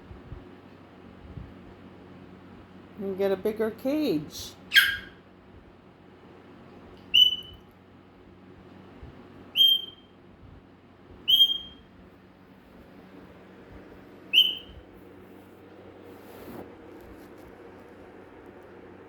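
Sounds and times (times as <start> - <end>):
parrot whistling: 4.7 - 5.2, 7.1 - 7.6, 9.5 - 10.1, 11.3 - 11.9, 14.3 - 14.8.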